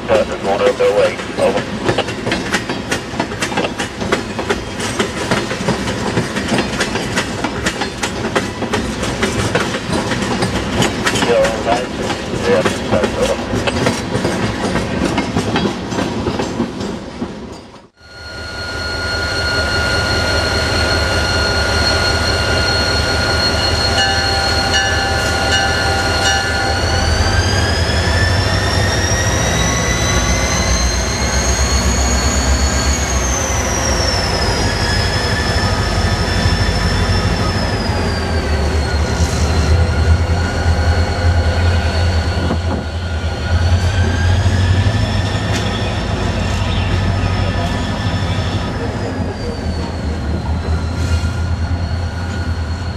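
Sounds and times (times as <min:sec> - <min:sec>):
freight train rumble: 0:00.0 - 0:52.9
high wheel squeal: 0:18.0 - 0:52.9.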